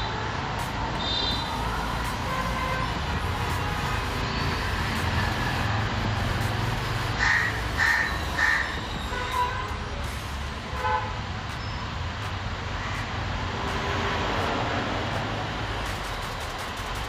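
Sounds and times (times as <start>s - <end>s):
road traffic rumble: 0.0s - 17.0s
vehicle horn toots: 1.0s - 4.5s, 9.0s - 9.8s, 10.7s - 11.2s.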